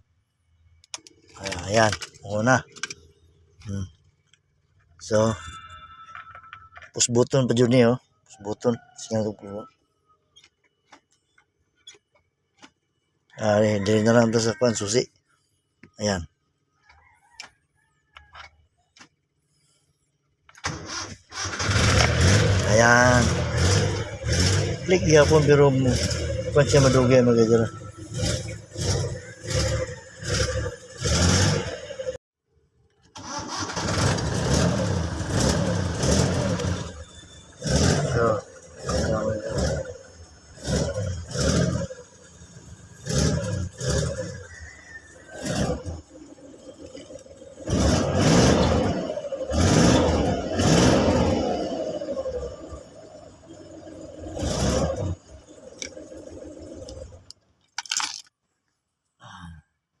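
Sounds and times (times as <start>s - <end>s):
car engine cranking and starting: 0.7s - 6.7s, 20.4s - 32.2s, 33.0s - 58.3s.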